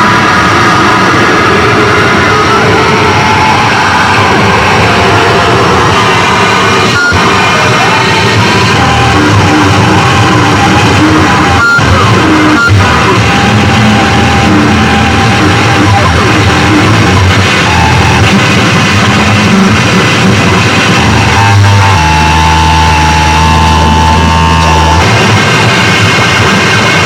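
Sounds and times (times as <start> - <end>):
distorted harsh noise: 0.0 - 27.0
low droning hum: 1.1 - 26.3
held higher tone: 21.0 - 25.2.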